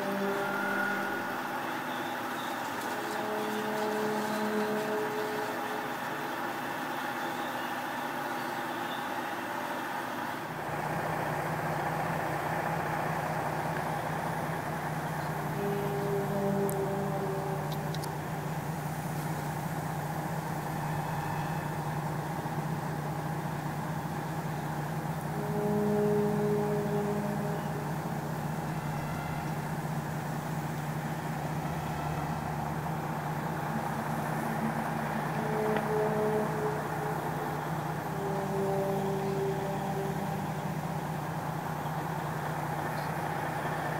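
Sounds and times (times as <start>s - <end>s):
drone of held tones: 0.0s - 43.9s.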